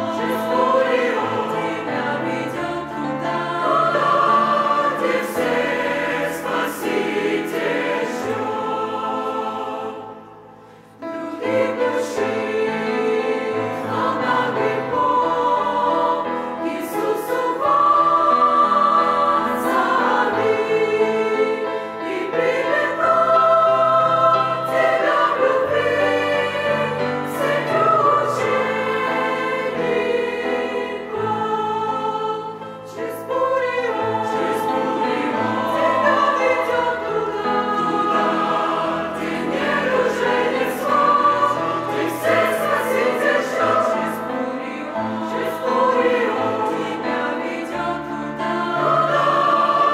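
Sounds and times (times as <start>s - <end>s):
choir singing a hymn: 0.0s - 49.9s.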